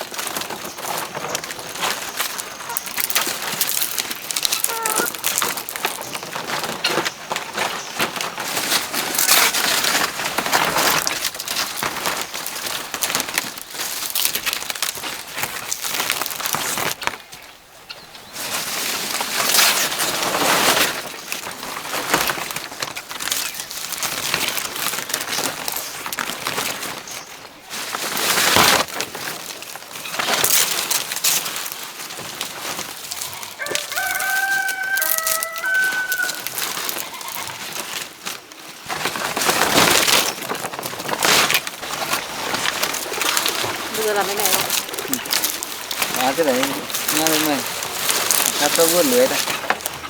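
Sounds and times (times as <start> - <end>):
rooster crowing: 33.2 - 37.3.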